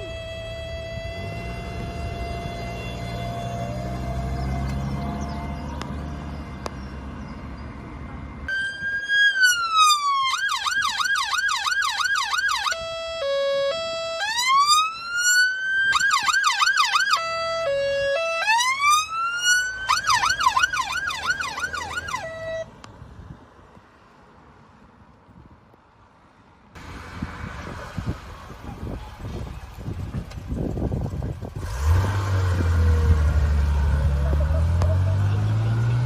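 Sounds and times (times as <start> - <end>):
low engine rumble: 0.0 - 9.8, 26.8 - 36.0
electronic siren wailing and yelping: 8.5 - 22.6.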